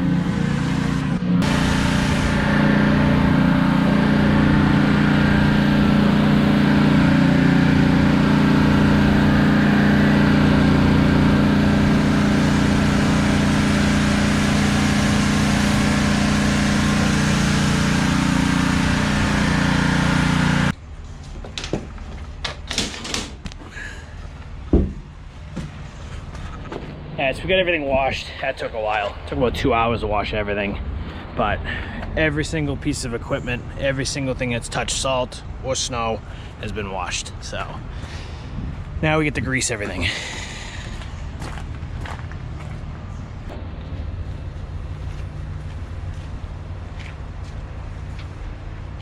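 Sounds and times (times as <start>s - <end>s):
pressure washer engine running: 0.0s - 20.8s
water spray hissing: 0.3s - 20.7s.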